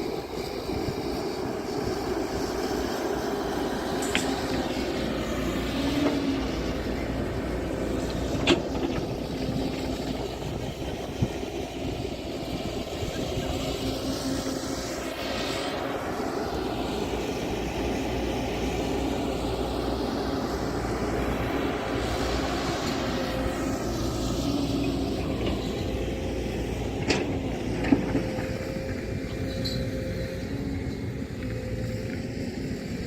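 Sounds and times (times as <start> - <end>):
engine running: 0.0 - 33.0.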